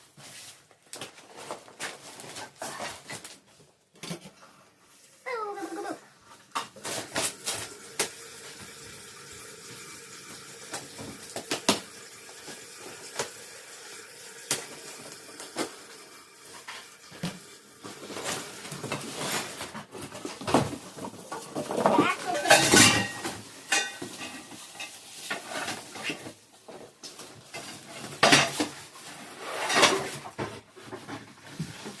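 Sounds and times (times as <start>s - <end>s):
packaging rustling and clatter: 0.0s - 4.2s, 17.8s - 32.0s.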